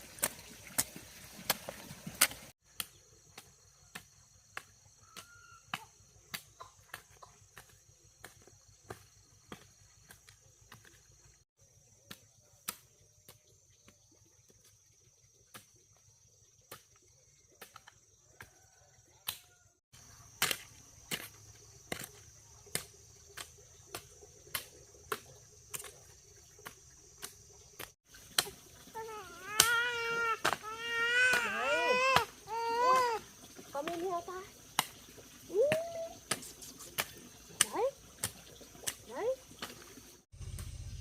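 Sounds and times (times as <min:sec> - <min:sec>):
baby crying: 0:29.0 - 0:33.2.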